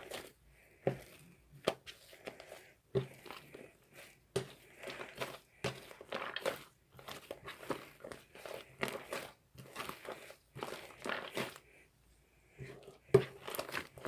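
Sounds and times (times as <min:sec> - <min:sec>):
slime crackling and popping: 0:05.9 - 0:06.8.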